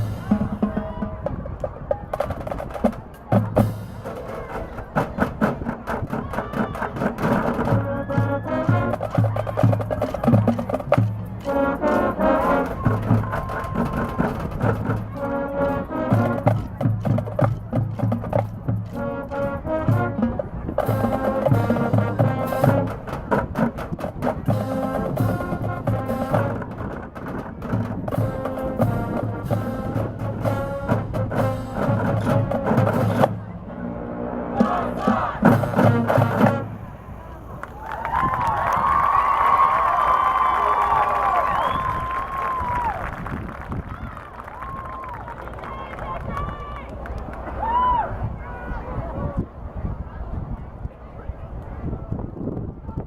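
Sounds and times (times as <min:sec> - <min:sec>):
brass chords: 0:00.0 - 0:01.5, 0:07.2 - 0:27.0, 0:27.7 - 0:37.6
percussion: 0:00.0 - 0:33.5
marching band playing: 0:00.0 - 0:38.4.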